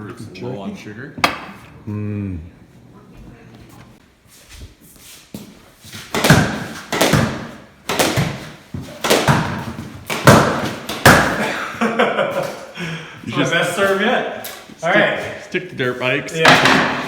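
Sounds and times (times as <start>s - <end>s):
loud sharp knocks: 6.1s - 11.4s, 16.4s - 17.0s.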